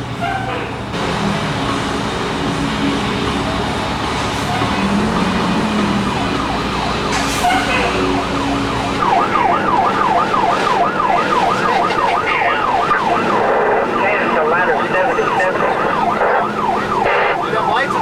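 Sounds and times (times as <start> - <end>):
vehicle engine and road noise: 0.0 - 18.0
siren yelping: 0.2 - 18.0.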